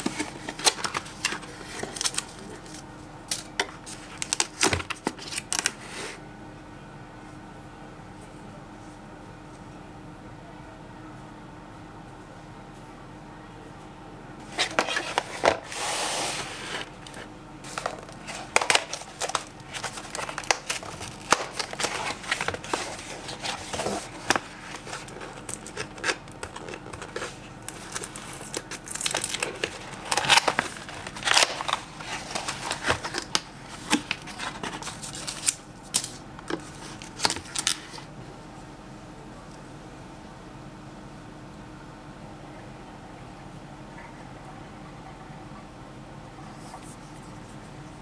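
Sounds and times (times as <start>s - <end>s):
packaging crinkling and tearing: 0.0s - 5.9s, 14.4s - 38.1s.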